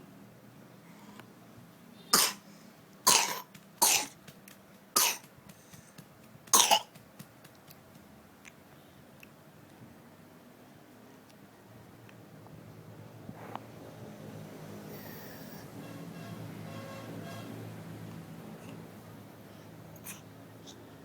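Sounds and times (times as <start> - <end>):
harsh coughs: 2.2 - 2.4, 3.1 - 4.2, 5.0 - 5.3, 6.5 - 7.0.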